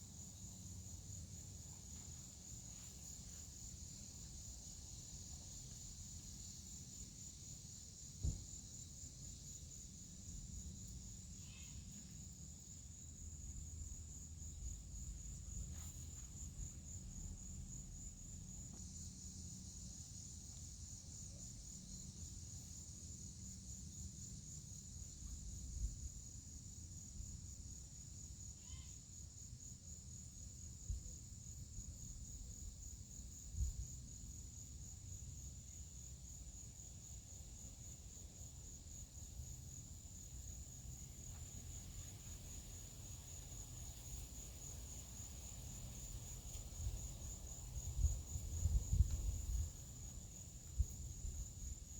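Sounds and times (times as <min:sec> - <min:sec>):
insects trilling: 0:00.0 - 0:51.9.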